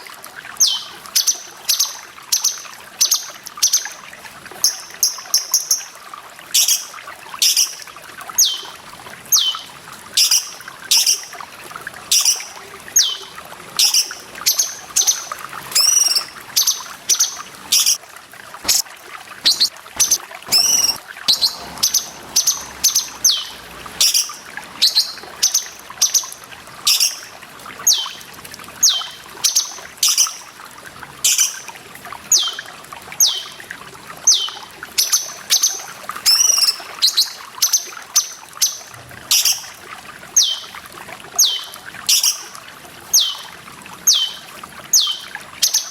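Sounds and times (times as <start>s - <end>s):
trickling water: 0.0s - 45.9s
bird calling downward notes: 15.8s - 16.8s, 19.4s - 26.3s.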